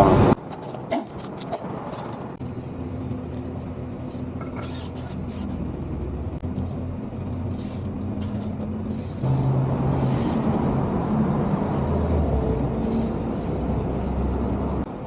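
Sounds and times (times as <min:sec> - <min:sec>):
motor vehicle running: 0:00.0 - 0:15.0
road noise: 0:00.0 - 0:15.0.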